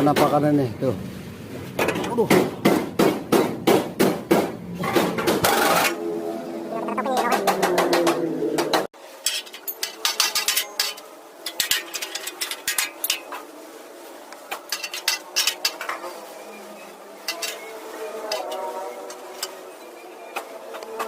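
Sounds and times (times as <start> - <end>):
hand tools clinking on sheet metal: 9.2 - 13.4, 14.6 - 16.0, 17.2 - 19.7.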